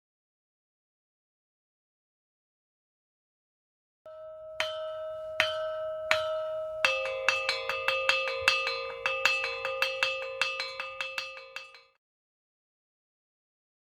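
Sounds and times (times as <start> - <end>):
metal bell ringing: 4.1 - 12.0.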